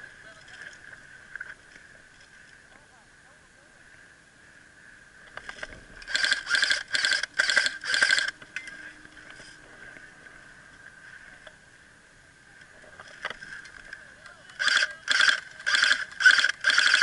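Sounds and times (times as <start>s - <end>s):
airsoft gun full-auto bursts: 6.1s - 8.4s, 14.6s - 17.0s.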